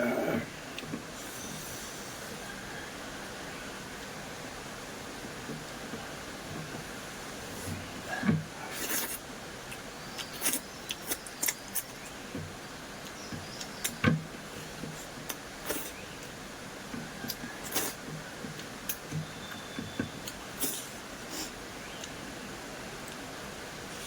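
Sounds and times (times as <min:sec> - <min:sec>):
steady hiss: 0:00.0 - 0:24.0
person chewing food: 0:17.2 - 0:19.0.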